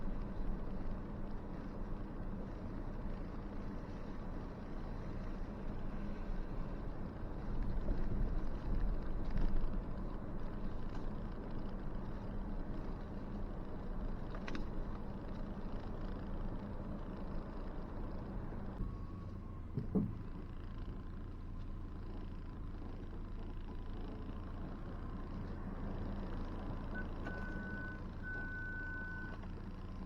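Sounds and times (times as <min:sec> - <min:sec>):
engine and tyre rumble: 0:00.0 - 0:30.0
short knock: 0:19.8 - 0:20.2.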